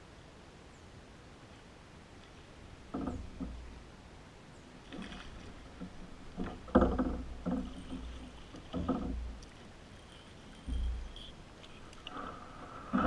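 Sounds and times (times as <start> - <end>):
paddle strokes splashing water: 4.8 - 13.0.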